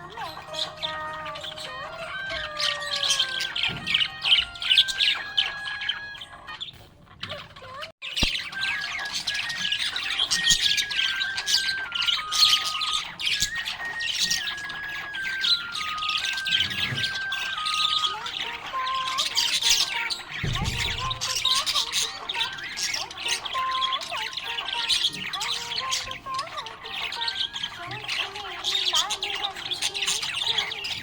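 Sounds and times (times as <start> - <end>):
budgerigars chirping and squawking: 0.0 - 31.0.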